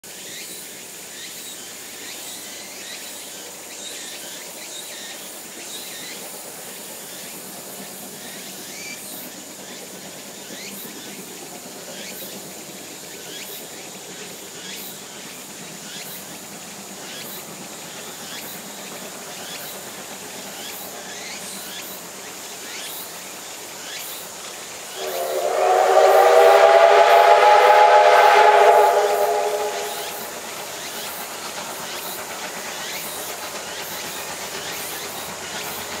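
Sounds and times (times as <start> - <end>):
steady steam hiss: 0.0 - 36.0
steam locomotive whistle: 24.9 - 30.9.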